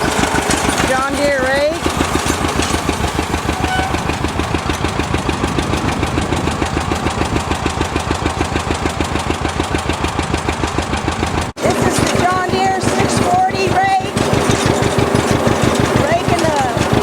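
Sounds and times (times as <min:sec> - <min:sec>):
tractor engine running: 0:00.0 - 0:17.0.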